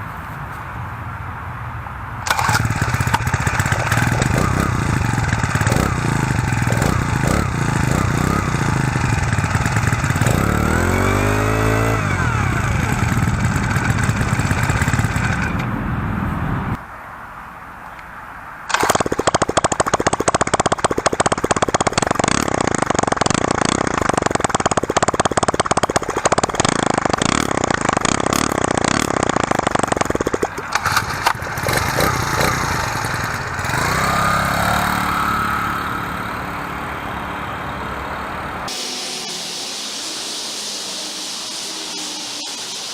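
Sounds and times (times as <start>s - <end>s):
motorbike engine exhaust crackle: 2.3s - 15.6s, 18.7s - 35.2s.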